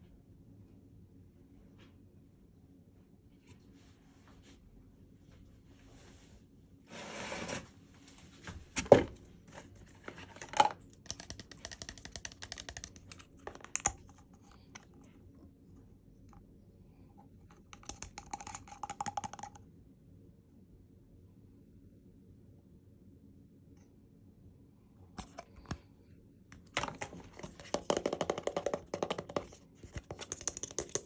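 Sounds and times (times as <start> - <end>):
small clicks and scratches: 26.6 - 31.0.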